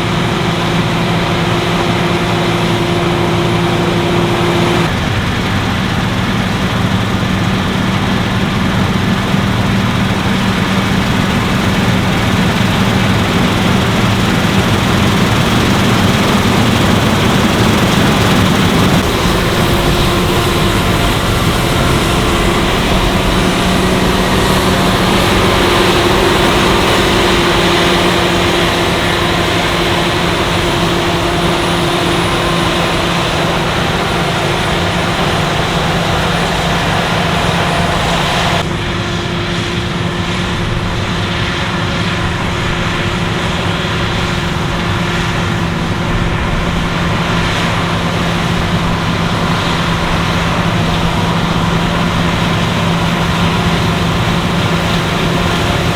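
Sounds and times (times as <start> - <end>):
combine harvester drone: 0.0 - 55.9
machine hiss: 14.8 - 38.6.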